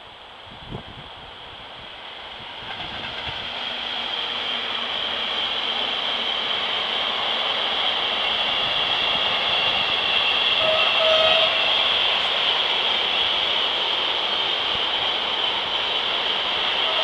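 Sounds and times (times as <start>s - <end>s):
train wheels rushing on rails: 0.0s - 17.0s.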